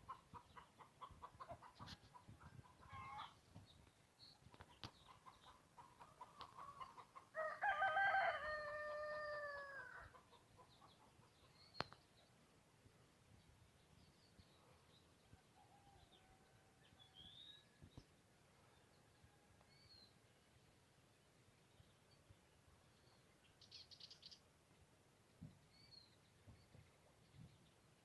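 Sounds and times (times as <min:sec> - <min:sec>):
chickens clucking: 0:00.0 - 0:03.5, 0:04.5 - 0:07.4, 0:10.0 - 0:12.0
rooster crowing: 0:07.4 - 0:10.1.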